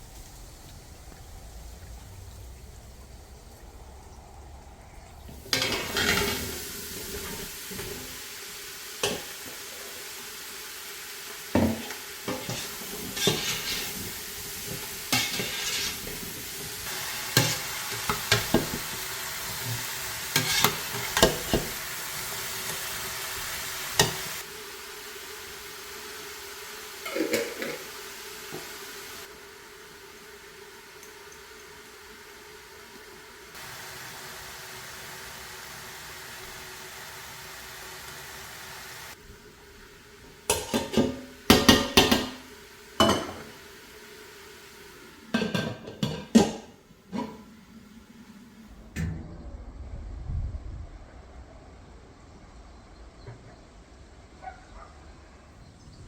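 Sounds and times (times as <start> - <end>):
vegetables sizzling in a pan: 0.0 - 4.0, 5.2 - 48.6
utensil scraping and knocking a pan: 11.6 - 16.1, 19.7 - 21.8, 45.4 - 47.5.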